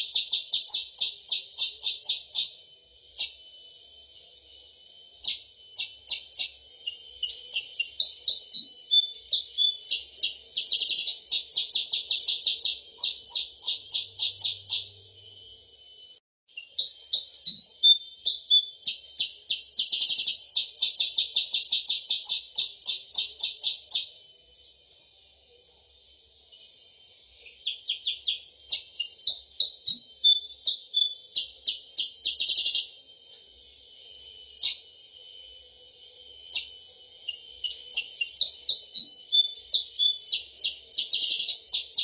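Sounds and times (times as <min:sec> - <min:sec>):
bird chirping and trilling: 0:00.0 - 0:02.6, 0:05.2 - 0:15.0, 0:16.5 - 0:24.1, 0:27.5 - 0:33.0, 0:37.3 - 0:42.0
faint high hiss: 0:00.0 - 0:42.0.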